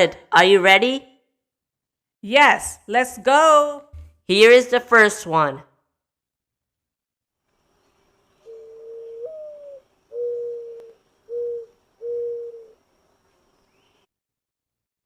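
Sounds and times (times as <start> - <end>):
mourning dove cooing: 8.3 - 12.8.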